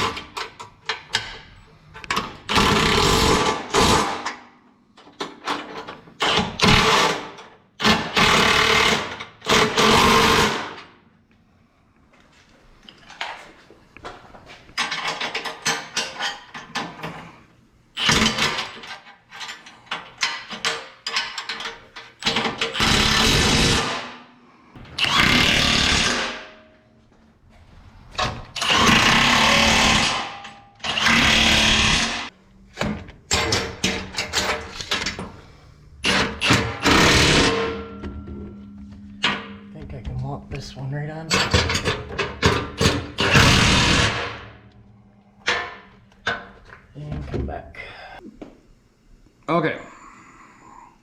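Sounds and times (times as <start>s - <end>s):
power tool driving bolts: 2.0s - 4.4s, 5.2s - 10.9s, 18.0s - 24.2s, 25.0s - 26.6s, 28.2s - 35.3s, 36.0s - 37.8s, 41.3s - 44.6s.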